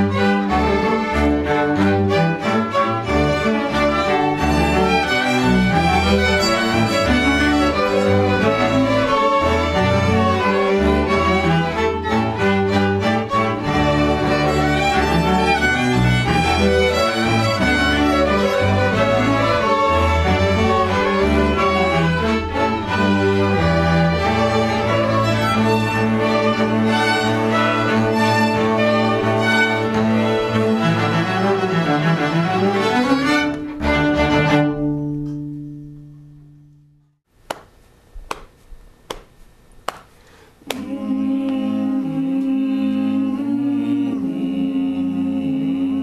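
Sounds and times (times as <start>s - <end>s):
bowed string ensemble music: 0.0s - 35.8s.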